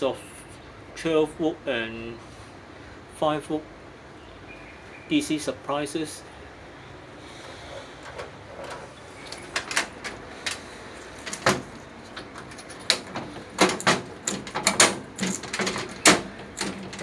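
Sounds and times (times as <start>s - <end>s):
clicks of hard parts handled: 8.0s - 17.0s.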